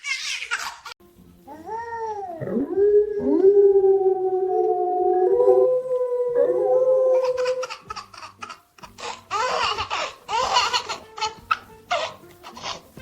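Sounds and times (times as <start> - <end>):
dog howling: 2.4 - 7.7
baby crying: 7.2 - 12.9.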